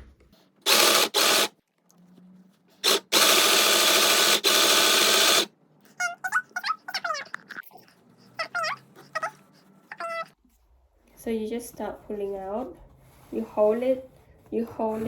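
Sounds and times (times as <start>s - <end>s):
electric sewing machine stitching: 0.6s - 1.5s, 2.8s - 5.5s.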